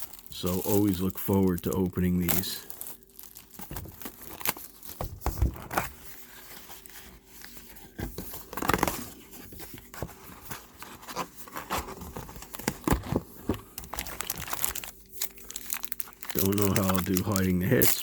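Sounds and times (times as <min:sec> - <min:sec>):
packaging crinkling and tearing: 0:00.0 - 0:18.0
cardboard and cards clicking: 0:12.5 - 0:18.0.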